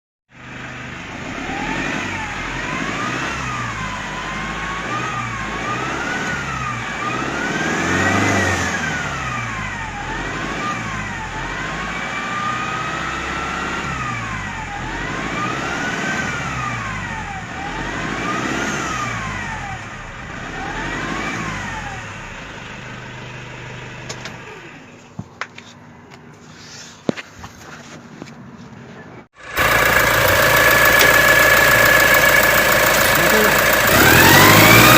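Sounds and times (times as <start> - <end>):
car engine revving: 0.6 - 22.8, 29.4 - 34.9
sharp clicks: 30.7 - 34.9.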